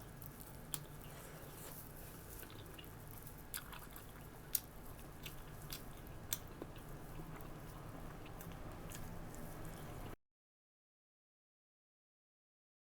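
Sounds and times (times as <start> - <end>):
person chewing: 0.0 - 10.2.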